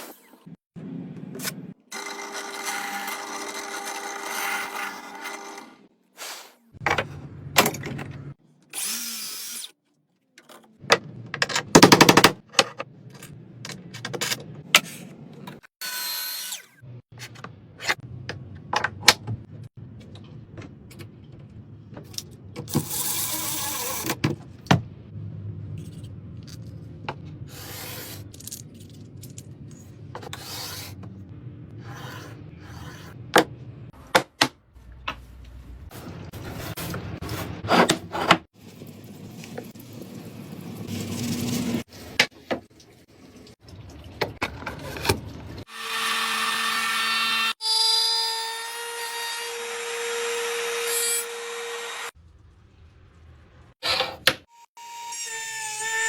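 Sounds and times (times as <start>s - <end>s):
power tool running: 1.9s - 5.8s.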